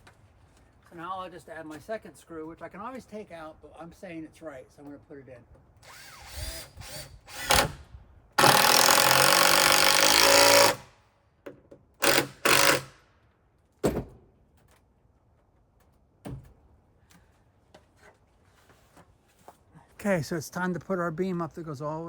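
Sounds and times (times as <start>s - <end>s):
power drill driving screw: 5.8s - 10.9s, 12.0s - 13.0s.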